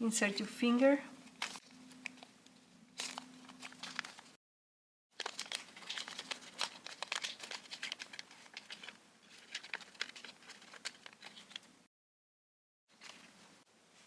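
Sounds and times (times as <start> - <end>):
paper crinkling and crackling: 1.4 - 2.3, 3.0 - 4.4, 5.2 - 11.7, 12.9 - 13.4.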